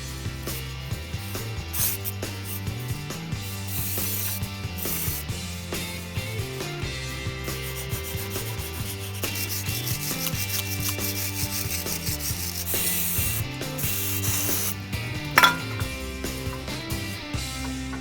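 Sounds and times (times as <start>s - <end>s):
fast ticking beat: 0.0s - 17.8s
bass line: 0.0s - 18.0s.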